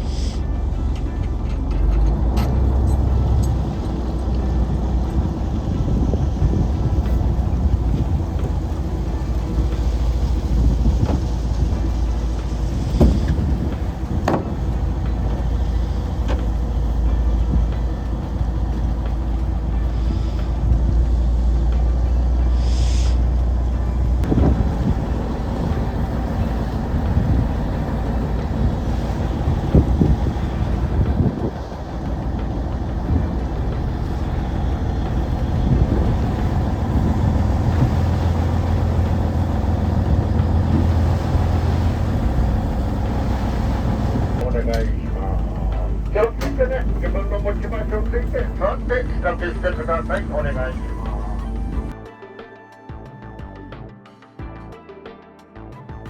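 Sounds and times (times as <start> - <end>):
boat engine humming: 0.0 - 52.0
sharp knocks: 12.8 - 14.8.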